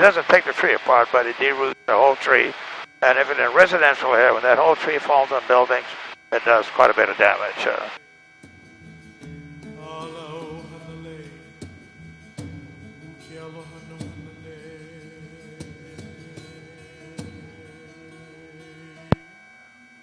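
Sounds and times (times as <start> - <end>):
steady hum: 0.0 - 20.0
soft background music: 8.4 - 19.3.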